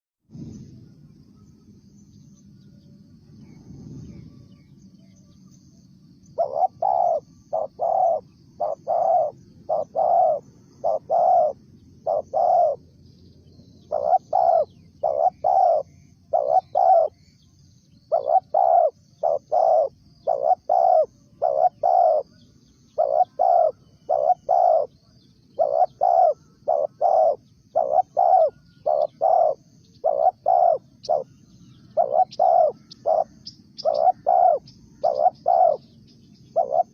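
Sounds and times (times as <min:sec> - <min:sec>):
faint high chirping: 0:00.3 - 0:36.9
dove cooing: 0:06.2 - 0:13.0, 0:13.8 - 0:17.4, 0:18.0 - 0:36.9.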